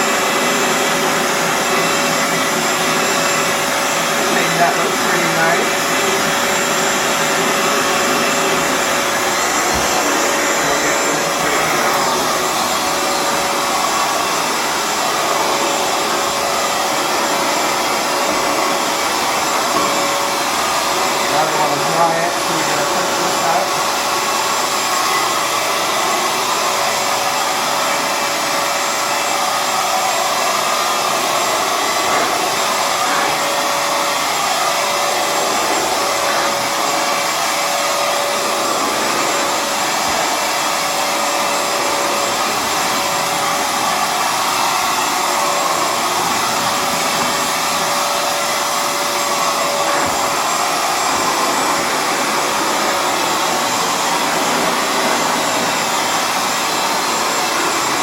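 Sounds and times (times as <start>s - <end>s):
floor cleaner motor whirring: 0.0s - 58.0s.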